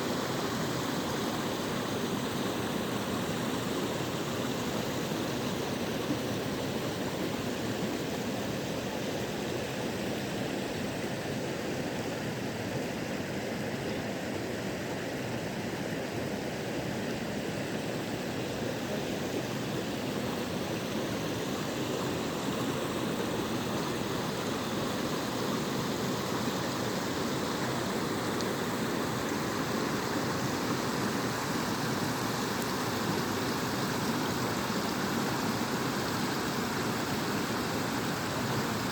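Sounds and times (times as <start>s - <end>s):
waterfall rushing: 18.6s - 38.9s.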